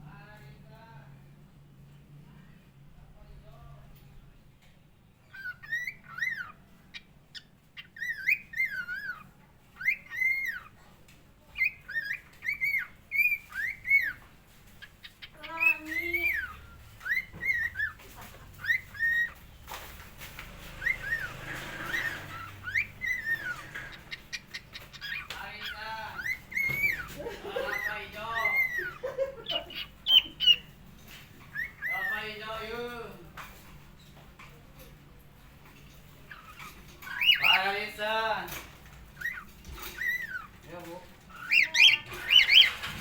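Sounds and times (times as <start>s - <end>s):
harsh bird call: 20.4s - 30.7s, 41.3s - 43.0s
cockatiel whistling: 20.8s - 25.2s, 26.2s - 30.7s.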